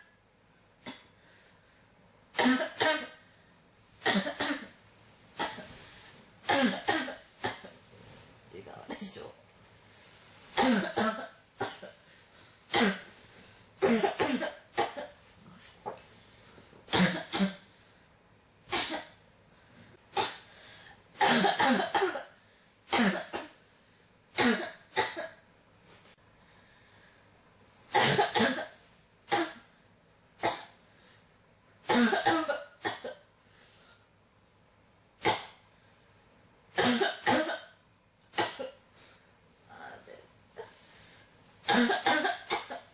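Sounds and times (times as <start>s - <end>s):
person coughing: 2.4s - 3.2s, 4.0s - 4.8s, 5.4s - 5.8s, 6.4s - 7.8s, 10.6s - 12.0s, 12.7s - 13.2s, 13.8s - 15.2s, 16.9s - 17.6s, 21.2s - 23.6s, 24.4s - 25.4s, 27.9s - 29.7s, 31.9s - 33.3s, 36.8s - 37.8s, 38.4s - 38.8s, 41.7s - 42.9s.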